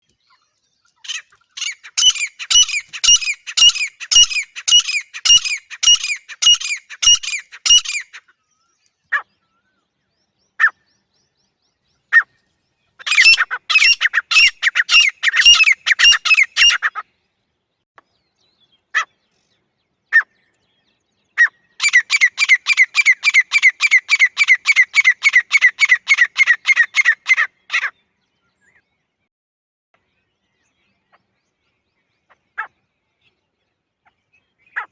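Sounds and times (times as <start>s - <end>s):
francolin calling: 1.0s - 8.2s, 13.0s - 17.0s.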